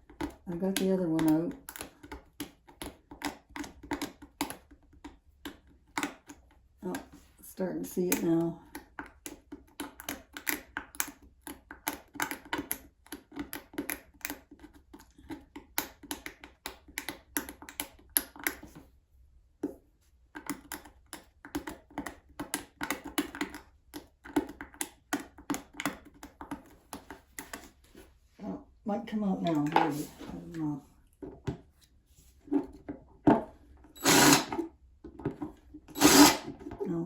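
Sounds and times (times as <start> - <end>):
hand tool scraping fastener: 34.0 - 34.7, 35.9 - 36.8.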